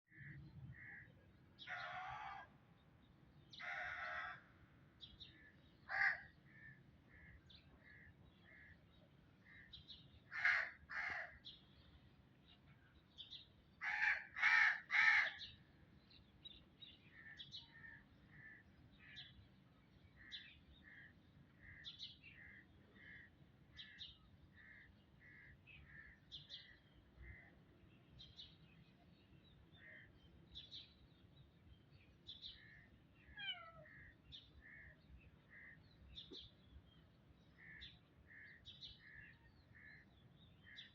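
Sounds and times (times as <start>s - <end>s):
bird harsh calls: 5.9s - 8.8s, 32.4s - 35.8s.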